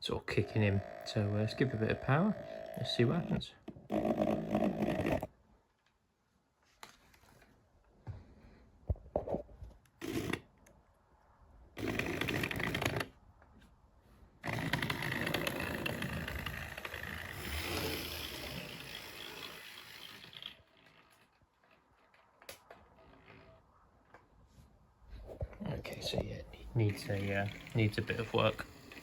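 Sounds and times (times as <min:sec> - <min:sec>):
model locomotive motor whirring: 0:00.4 - 0:03.2, 0:11.8 - 0:13.1, 0:14.4 - 0:21.4, 0:26.8 - 0:29.0.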